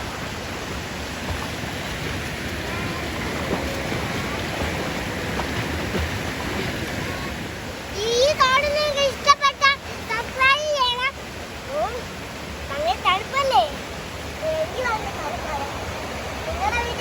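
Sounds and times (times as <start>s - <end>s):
stream rushing over rocks: 0.0s - 17.0s.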